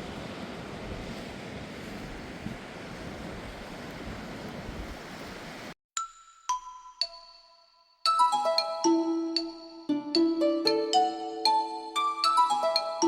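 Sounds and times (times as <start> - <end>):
rushing water: 0.0 - 5.8.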